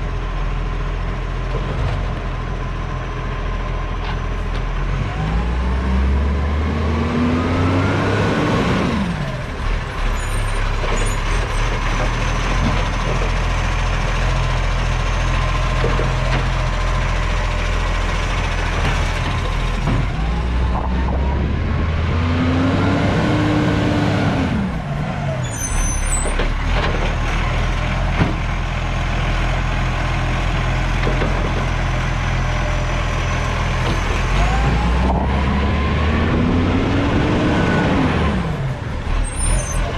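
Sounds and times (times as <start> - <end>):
diesel engine revving: 4.5 - 39.9.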